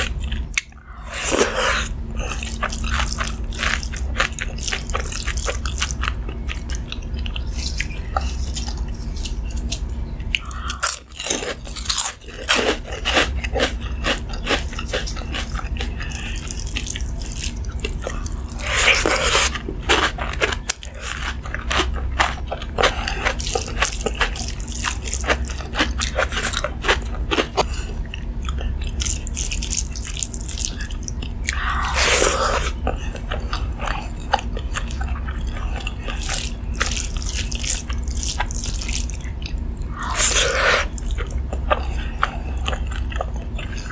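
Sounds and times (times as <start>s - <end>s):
person crunching and chewing food: 0.0s - 43.9s
steady low hum: 0.0s - 43.9s.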